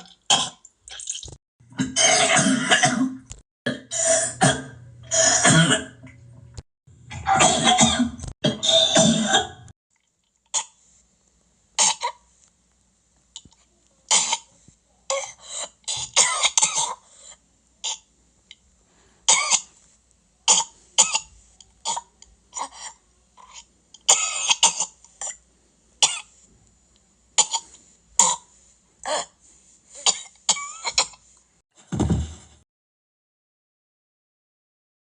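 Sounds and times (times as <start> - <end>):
person coughing: 1.7 - 6.0, 7.1 - 9.7, 30.0 - 31.2.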